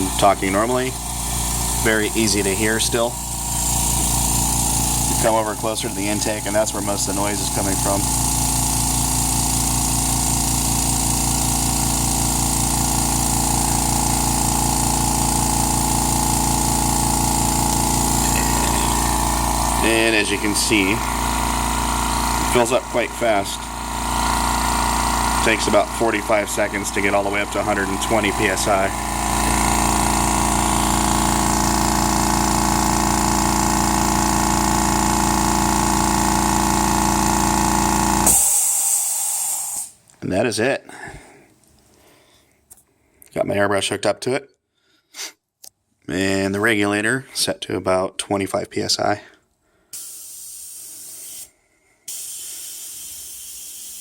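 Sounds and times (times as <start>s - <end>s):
air compressor running: 0.0s - 40.0s, 49.8s - 54.0s
sharp hiss of released air: 38.2s - 40.0s, 49.9s - 54.0s.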